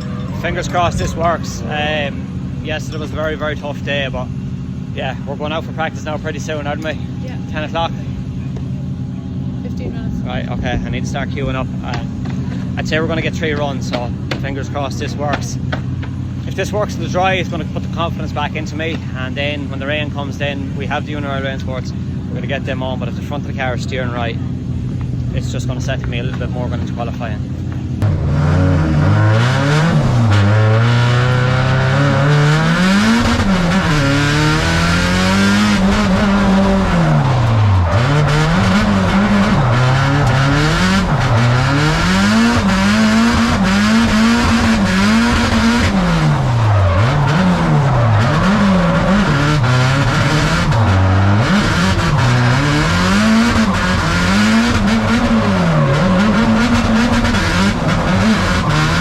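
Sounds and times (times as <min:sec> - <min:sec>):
car engine revving hard: 0:00.0 - 0:59.0
tyre squeal: 0:31.3 - 0:59.0.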